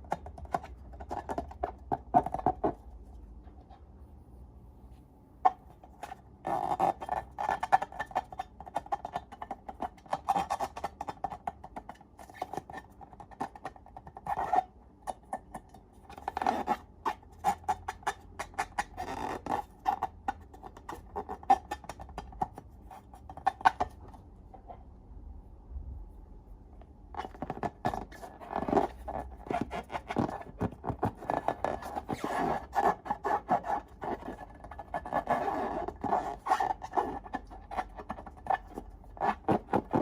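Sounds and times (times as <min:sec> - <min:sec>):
rubbery balloon squeaks: 0:06.0 - 0:09.2, 0:09.8 - 0:11.4, 0:13.6 - 0:14.7, 0:16.1 - 0:24.0, 0:27.1 - 0:40.0.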